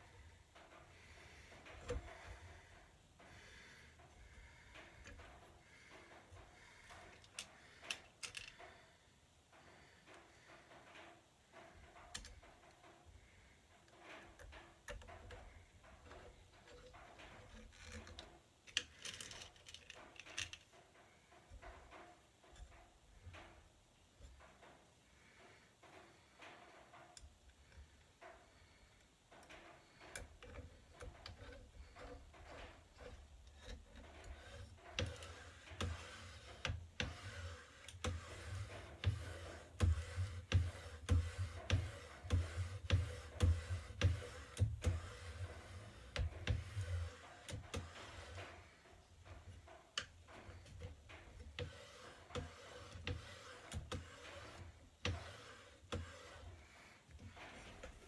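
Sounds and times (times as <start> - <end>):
parts and tools clicking: 0.0 - 8.7, 13.7 - 23.6, 25.7 - 58.0.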